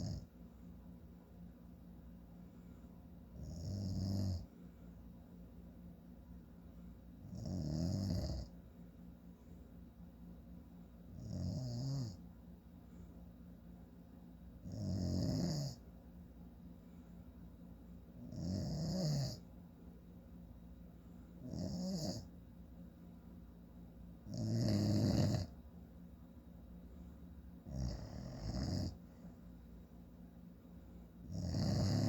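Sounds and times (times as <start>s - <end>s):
man snoring: 0.0s - 0.2s, 3.4s - 4.5s, 7.3s - 8.5s, 11.2s - 12.2s, 14.7s - 15.8s, 18.3s - 19.4s, 21.4s - 22.2s, 24.3s - 25.5s, 27.7s - 29.0s, 31.3s - 32.0s
quiet breathing: 2.2s - 5.2s, 8.2s - 10.1s, 11.0s - 14.0s, 15.4s - 18.4s, 20.6s - 22.4s, 26.4s - 32.0s.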